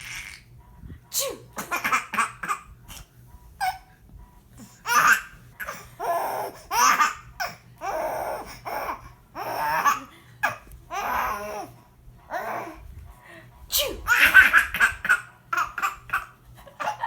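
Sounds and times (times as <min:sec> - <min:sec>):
hearty laughter: 0:16.5 - 0:17.0.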